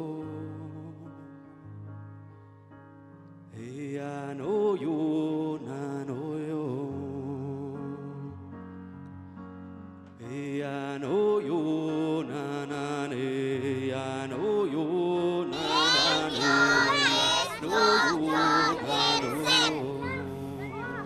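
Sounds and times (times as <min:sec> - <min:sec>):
person singing: 0:14.4 - 0:21.0.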